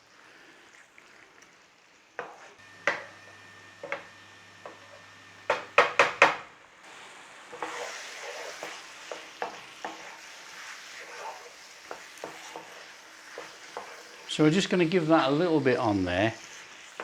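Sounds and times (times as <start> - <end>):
food sizzling: 0.0 - 17.0
spoon knocking against pan: 2.2 - 3.2, 5.4 - 6.4, 9.1 - 10.1.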